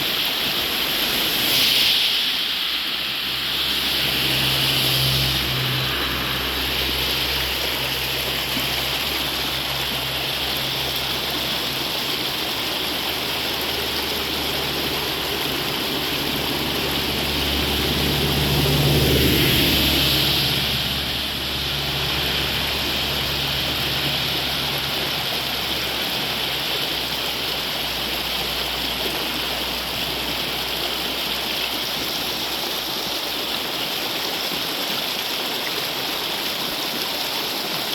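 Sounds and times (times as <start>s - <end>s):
heavy rain: 0.0s - 37.9s
running water: 0.0s - 37.9s
loud passing sound: 0.6s - 10.2s, 14.2s - 24.7s.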